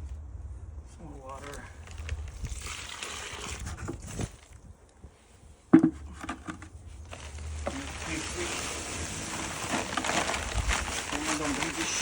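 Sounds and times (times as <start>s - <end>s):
water pouring and splashing: 1.8s - 4.5s, 7.1s - 12.0s.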